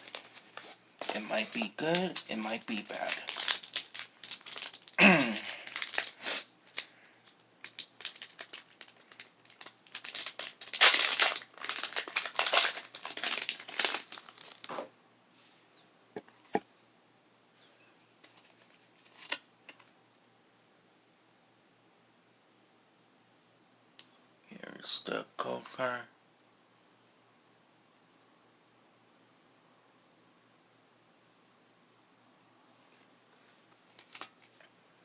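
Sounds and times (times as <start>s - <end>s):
foil wrapper crinkling and tearing: 0.0s - 14.9s, 18.3s - 19.4s, 33.8s - 34.7s.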